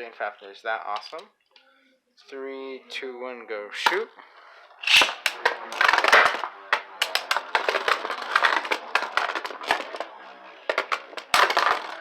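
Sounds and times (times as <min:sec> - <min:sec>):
spinning tops whirring and scraping: 0:04.8 - 0:12.0.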